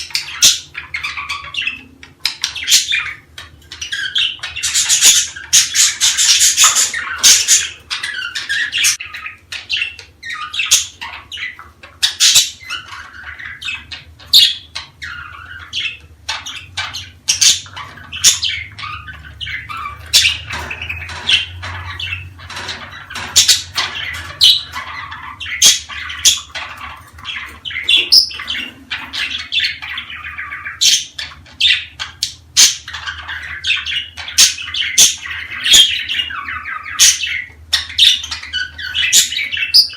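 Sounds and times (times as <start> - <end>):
bird chirps and squawks: 0.0 - 39.9
budgerigars chattering and warbling: 0.0 - 39.9.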